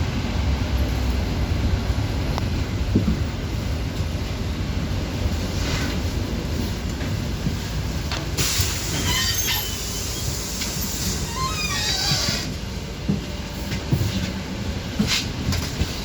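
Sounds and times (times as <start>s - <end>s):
bus engine and road rumble: 0.0s - 16.0s
loud hiss: 8.4s - 12.5s.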